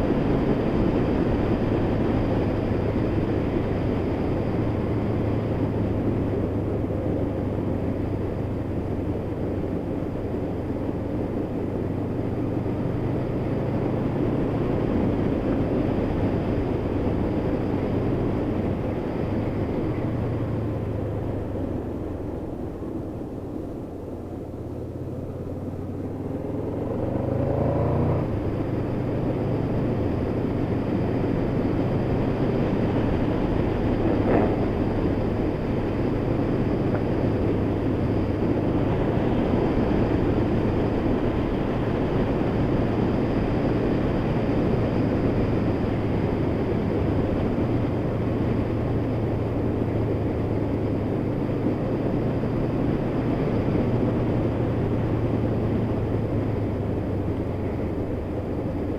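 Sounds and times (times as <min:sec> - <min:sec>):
wind and road noise: 0:00.0 - 0:58.9
motorcycle engine revving: 0:25.5 - 0:29.8, 0:32.0 - 0:43.6.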